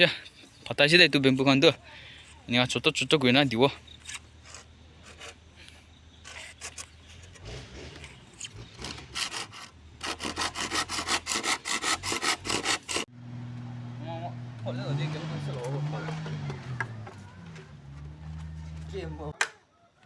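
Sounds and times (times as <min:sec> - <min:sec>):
hand saw cutting bamboo: 0:06.2 - 0:13.1.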